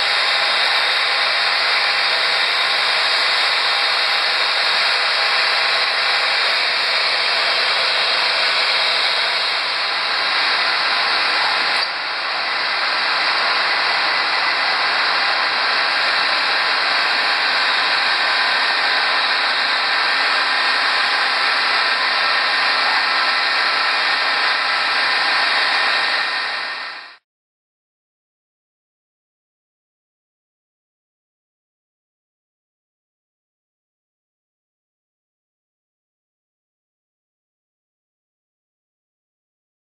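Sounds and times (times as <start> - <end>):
power tool grinding glass: 0.0 - 27.2.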